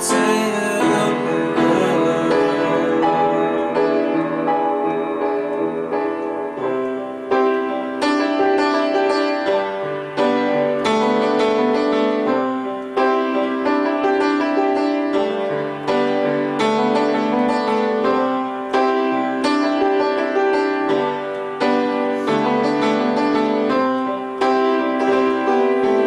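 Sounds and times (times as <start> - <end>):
solo piano playing: 0.0 - 26.0.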